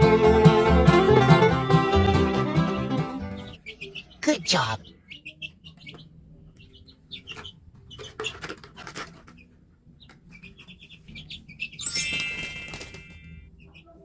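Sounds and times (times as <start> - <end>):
small birds chirping: 3.1 - 14.0.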